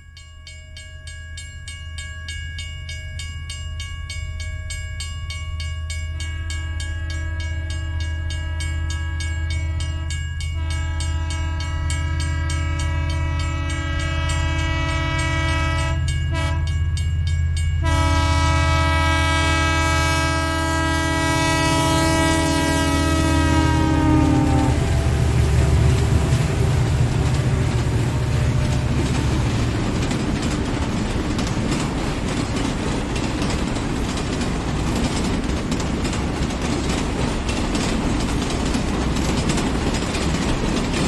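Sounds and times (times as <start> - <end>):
train rumbling past: 5.9 - 41.0
train horn blasts: 6.4 - 16.8, 17.8 - 29.3
train wheels clicking: 17.9 - 41.0.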